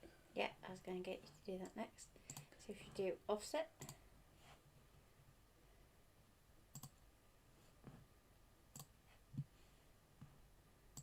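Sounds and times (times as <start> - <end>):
computer mouse clicks: 1.6 - 2.6, 3.8 - 4.0, 6.7 - 7.0, 8.7 - 9.5.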